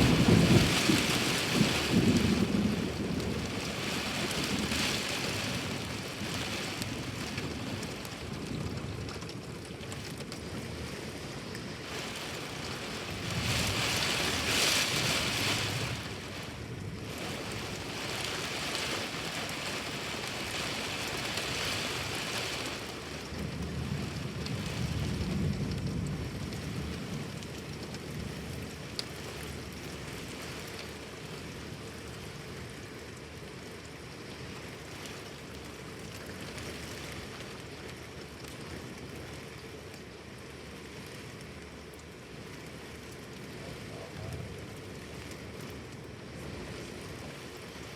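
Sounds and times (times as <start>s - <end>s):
low thunder rumble: 0.0s - 29.7s, 43.5s - 47.9s
heavy rain pouring: 0.0s - 47.9s.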